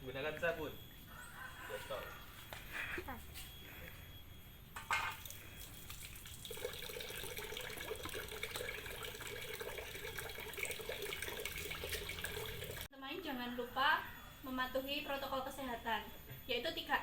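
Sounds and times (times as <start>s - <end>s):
water running from a tap: 4.8s - 12.9s.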